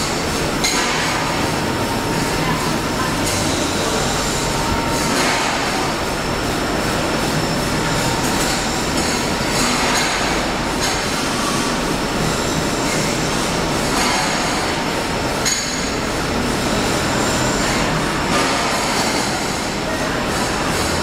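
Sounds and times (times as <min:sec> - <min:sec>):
pipe cutting machine running: 0:00.0 - 0:21.0.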